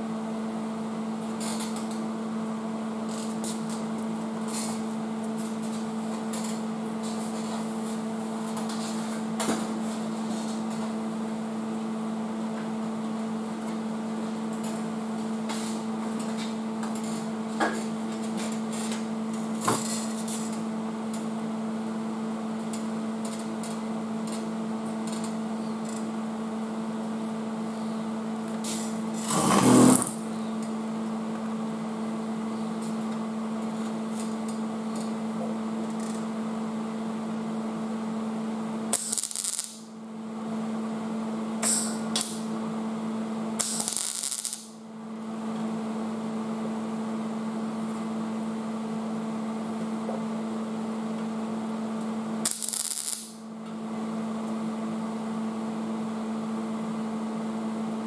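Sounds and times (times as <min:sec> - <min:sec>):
loud noisy burst: 0:29.3 - 0:30.2.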